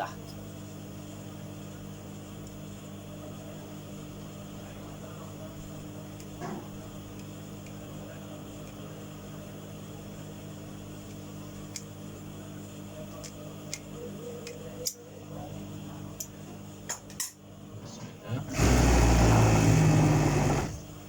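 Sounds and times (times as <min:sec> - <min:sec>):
sewing machine motor humming: 0:18.4 - 0:21.0.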